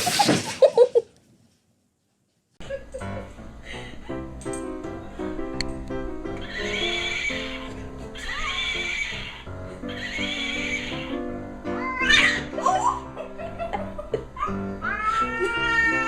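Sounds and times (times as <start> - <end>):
wavering animal cries: 6.4 - 11.2, 14.4 - 16.0.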